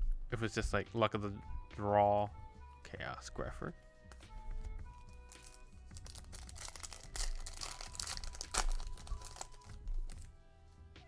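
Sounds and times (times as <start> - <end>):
foil pack tearing and crinkling: 5.1 - 10.3.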